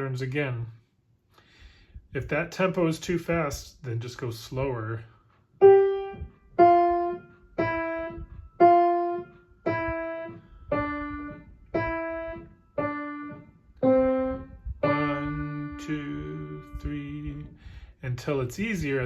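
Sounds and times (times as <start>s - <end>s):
slow piano notes: 5.6s - 17.6s.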